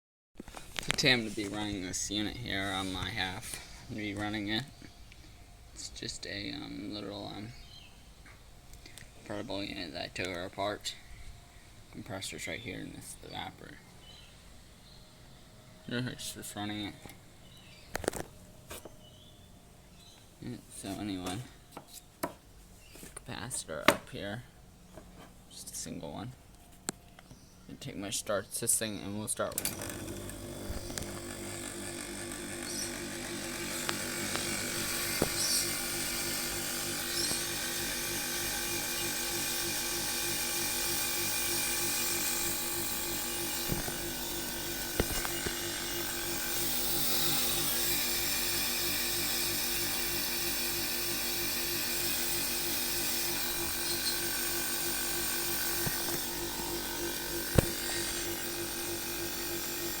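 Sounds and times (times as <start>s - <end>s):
sharp clicks: 29.5s - 48.4s
air conditioner compressor humming: 29.6s - 60.0s.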